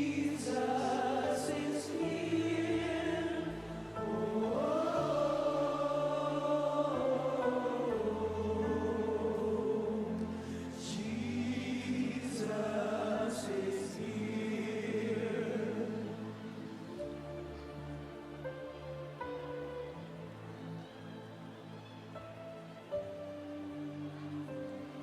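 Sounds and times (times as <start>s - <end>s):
voices singing gospel music: 0.0s - 17.2s.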